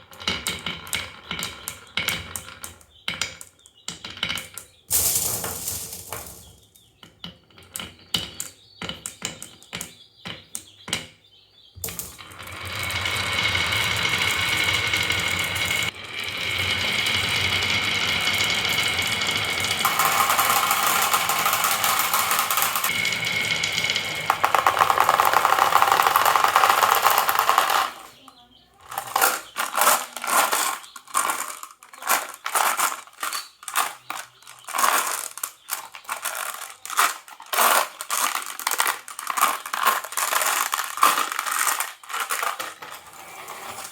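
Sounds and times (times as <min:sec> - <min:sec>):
marbles rolling along track: 0:00.0 - 0:06.8, 0:11.8 - 0:28.2, 0:28.8 - 0:43.9
marbles clacking: 0:04.5 - 0:06.8, 0:11.8 - 0:28.2, 0:28.8 - 0:43.2.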